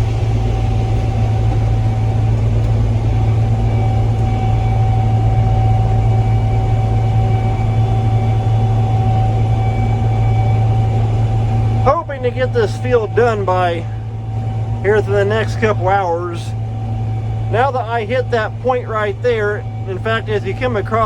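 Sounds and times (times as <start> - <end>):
combine harvester engine hum: 0.0 - 21.0
machinery whine: 0.0 - 21.0.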